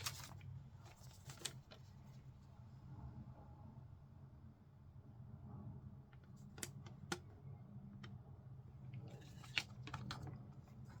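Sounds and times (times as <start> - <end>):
paper rustling: 0.0 - 2.2
low room hum: 0.0 - 11.0.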